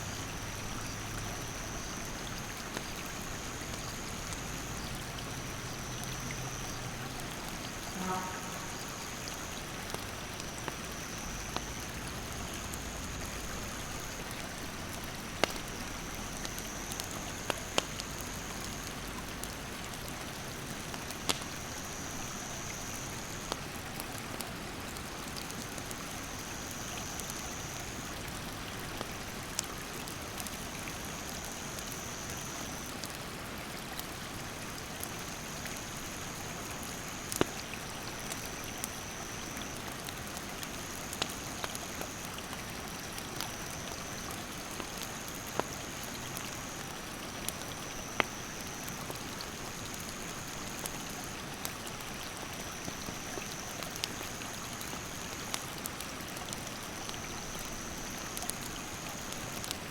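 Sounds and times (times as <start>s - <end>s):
campfire crackling: 0.0s - 59.9s
rushing stream water: 0.0s - 59.9s
high insect buzz: 7.7s - 9.4s.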